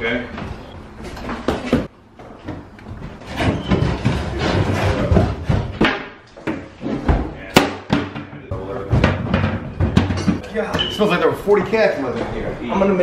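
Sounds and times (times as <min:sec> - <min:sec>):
cabinets bumping and scraping: 0:01.2 - 0:07.3, 0:07.9 - 0:10.8
cabinet knocking: 0:07.9 - 0:10.4.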